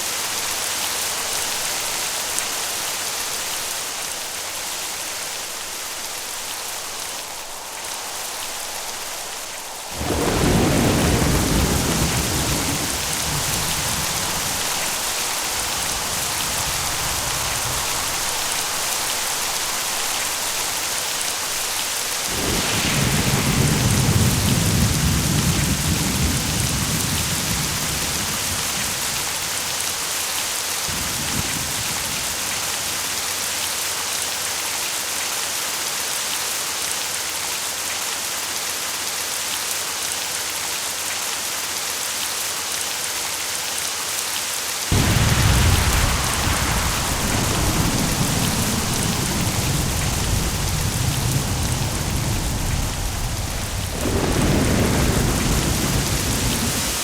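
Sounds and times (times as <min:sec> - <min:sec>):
heavy rain hissing: 0:00.0 - 0:57.0
thunder rumbling: 0:05.4 - 0:33.4, 0:44.9 - 0:57.0
loud thunderclap: 0:08.4 - 0:29.6, 0:30.9 - 0:32.8, 0:44.9 - 0:57.0.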